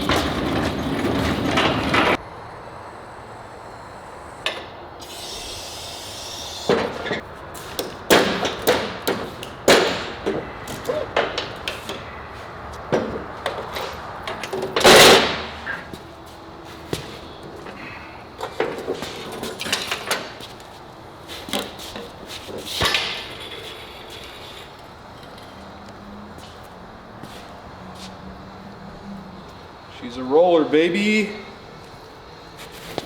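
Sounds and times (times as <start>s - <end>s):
metal clatter: 0.0s - 2.2s, 6.7s - 16.0s, 21.4s - 25.8s
metal tools clanking: 0.0s - 2.2s, 6.7s - 16.1s, 16.9s - 20.6s, 21.5s - 26.0s.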